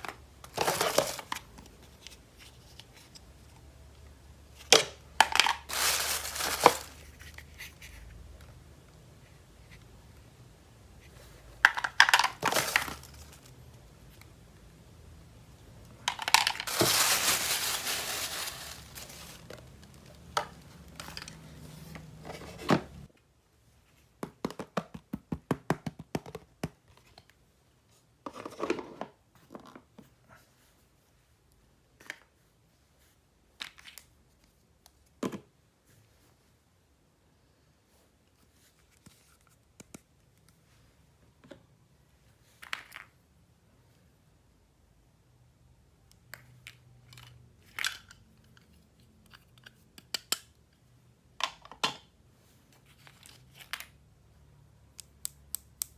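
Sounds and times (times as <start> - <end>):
packaging crinkling: 5.3 - 7.4, 11.7 - 13.5, 16.1 - 19.7
packaging tearing: 5.7 - 7.1, 16.2 - 19.5.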